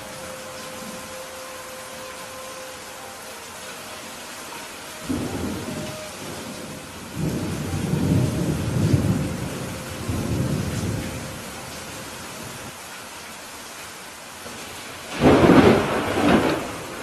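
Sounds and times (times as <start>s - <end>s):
steady rain: 0.0s - 17.0s
thunder rumbling: 5.0s - 12.7s, 15.0s - 17.0s.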